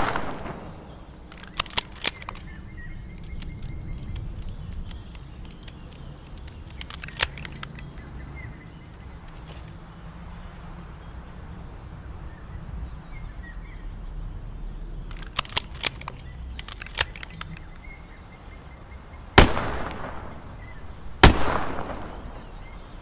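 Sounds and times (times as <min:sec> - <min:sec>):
revolver shots echoing: 0:00.0 - 0:01.3, 0:19.4 - 0:22.9
sharp clicks: 0:00.0 - 0:08.1, 0:09.1 - 0:09.8, 0:15.0 - 0:18.0, 0:19.4 - 0:22.8.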